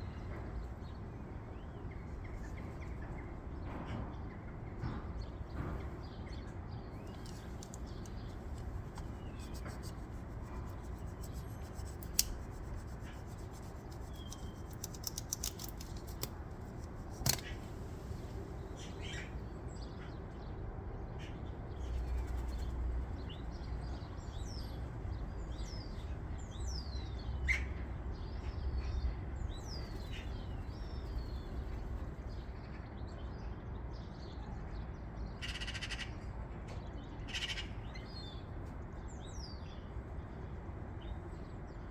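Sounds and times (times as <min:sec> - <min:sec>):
small birds chirping: 0:00.0 - 0:20.6, 0:21.2 - 0:34.4
steady low rumble: 0:05.5 - 0:15.3
sharp clicks: 0:11.2 - 0:12.8, 0:13.4 - 0:17.6.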